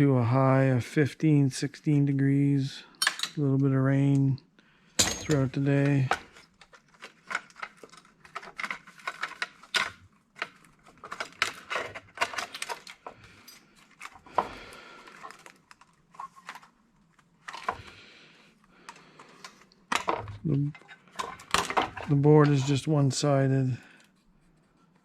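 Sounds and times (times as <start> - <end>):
metal parts clinking: 3.0 - 3.4, 5.0 - 6.2, 11.5 - 13.7.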